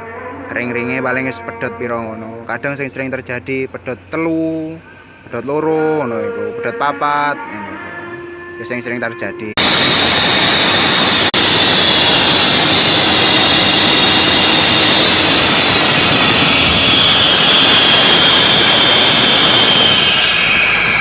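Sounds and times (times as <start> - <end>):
high falling whine: 2.9 - 21.0
excavator diesel engine running: 9.6 - 21.0.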